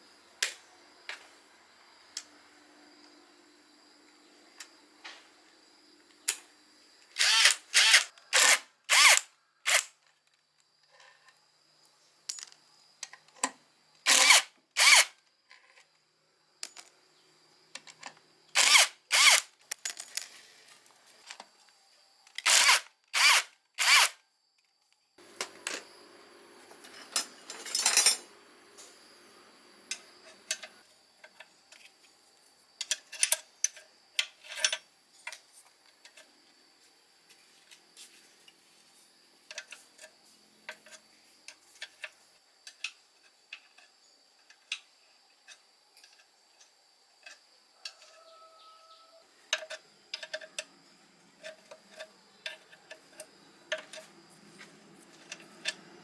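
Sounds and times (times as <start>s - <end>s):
power drill bursts: 7.2s - 9.9s, 14.1s - 15.1s, 18.6s - 19.5s, 22.4s - 24.2s.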